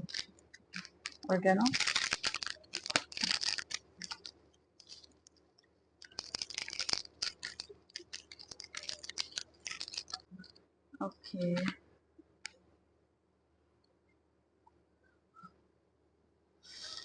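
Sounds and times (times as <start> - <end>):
food packaging crinkling: 0.0 - 5.4, 6.0 - 10.6.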